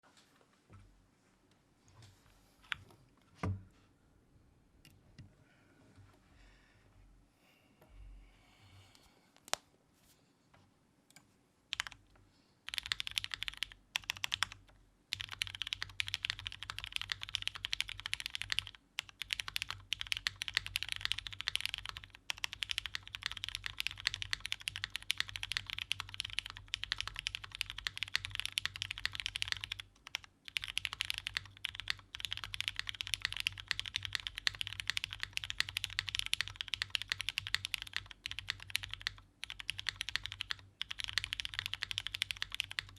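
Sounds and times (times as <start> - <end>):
mechanical keyboard typing: 11.7 - 12.0, 12.7 - 42.9.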